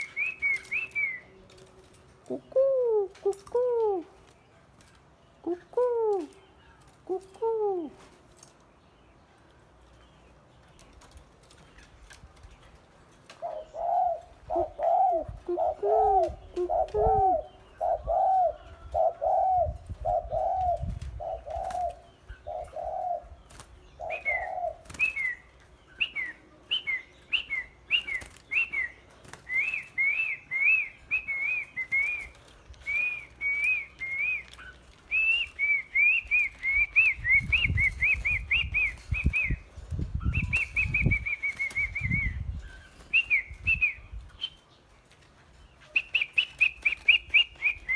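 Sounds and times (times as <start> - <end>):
bird whistled song: 0.0 - 1.4, 23.4 - 44.8, 45.8 - 47.9
bird cooing notes: 2.3 - 4.3, 5.4 - 6.4, 7.0 - 8.2, 13.4 - 25.4.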